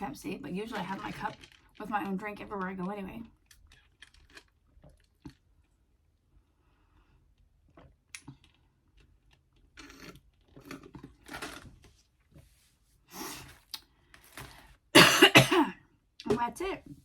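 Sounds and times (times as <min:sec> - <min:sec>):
food packaging rustling and clicking: 0:00.7 - 0:02.2, 0:02.8 - 0:05.5, 0:07.8 - 0:12.4, 0:13.6 - 0:14.7.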